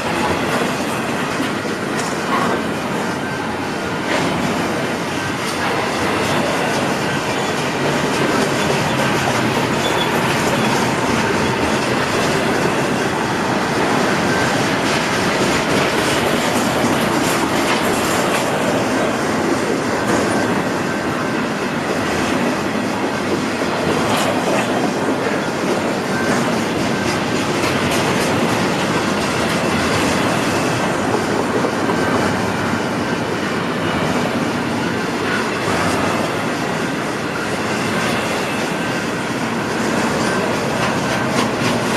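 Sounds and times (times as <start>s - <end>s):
clickety-clack over rail joints: 0.0s - 41.9s
train wheels rushing on rail: 0.0s - 41.9s
high wheel squeal: 8.4s - 15.2s.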